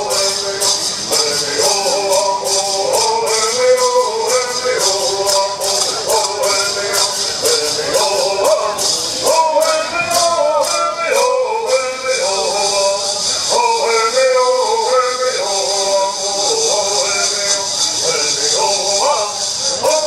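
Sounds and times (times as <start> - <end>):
gourd rattles shaking: 0.0 - 20.0
men singing in unison: 0.0 - 20.0.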